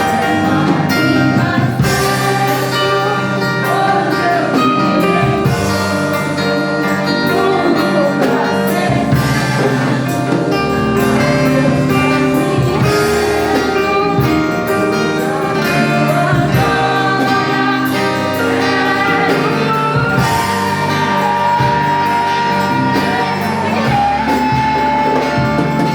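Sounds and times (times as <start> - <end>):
gospel singing with guitar: 0.0 - 25.9.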